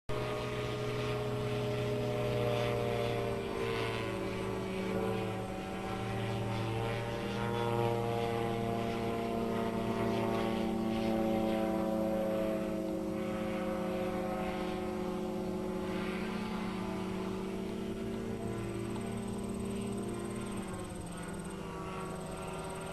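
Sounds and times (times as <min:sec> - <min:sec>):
propeller aircraft engine droning: 0:00.0 - 0:22.9.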